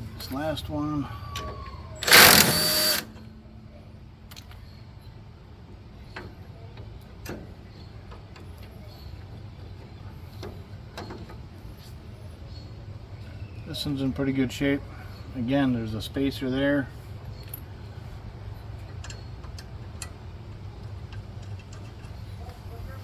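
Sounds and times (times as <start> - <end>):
power tool burst: 2.0 - 3.1
light clicks and knocks of parts: 4.2 - 4.8, 6.0 - 12.1, 17.2 - 23.0.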